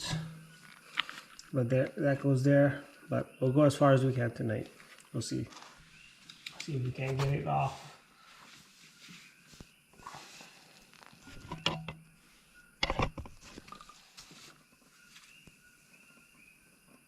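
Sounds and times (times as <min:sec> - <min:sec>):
hand tools knocking and clattering: 0:11.4 - 0:12.0.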